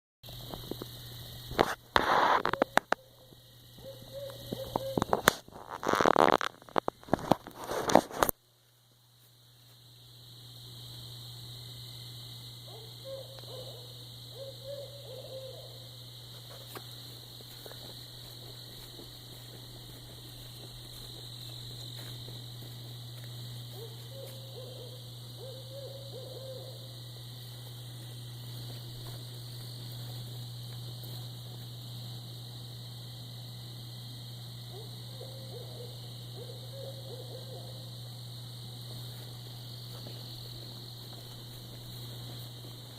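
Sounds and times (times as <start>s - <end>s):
high steady hiss: 0.3s - 36.5s, 37.1s - 42.9s
owl hooting: 2.0s - 6.3s, 12.7s - 16.0s, 23.7s - 27.0s, 34.7s - 37.9s
loud crackling noise: 4.9s - 8.4s.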